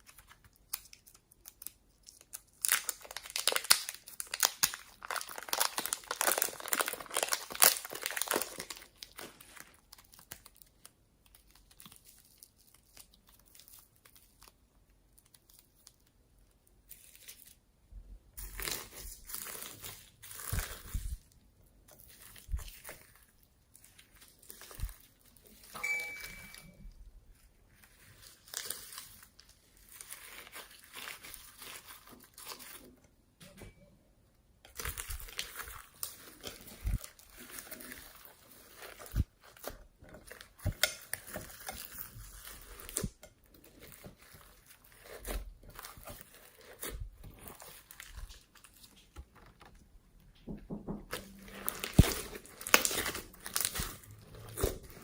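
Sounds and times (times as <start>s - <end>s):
slime crackling and popping: 0.0s - 17.6s, 18.4s - 25.7s, 34.6s - 49.4s, 51.1s - 55.0s.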